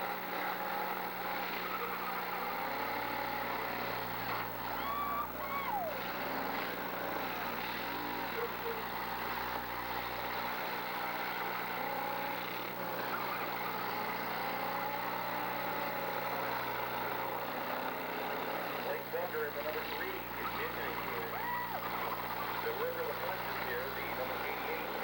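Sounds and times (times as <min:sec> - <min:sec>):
car engines revving: 0:00.0 - 0:25.0
steady noisy din: 0:00.0 - 0:25.0.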